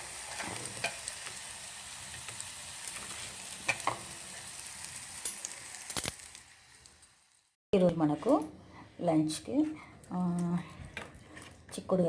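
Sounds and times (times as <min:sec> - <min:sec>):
oil sizzling while deep-frying: 0:00.0 - 0:07.6.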